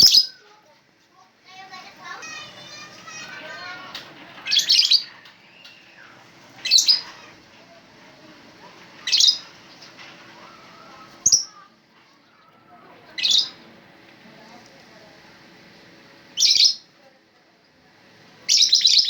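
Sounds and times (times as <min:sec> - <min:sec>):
lovebirds shrieking: 0:00.0 - 0:00.5, 0:02.1 - 0:13.6, 0:16.4 - 0:16.8
faint bird chattering: 0:00.0 - 0:00.6, 0:01.5 - 0:13.8, 0:16.4 - 0:16.9, 0:18.4 - 0:19.0.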